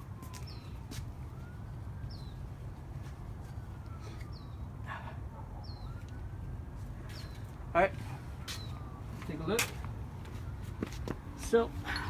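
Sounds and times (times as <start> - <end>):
distant siren: 0.0 - 12.0.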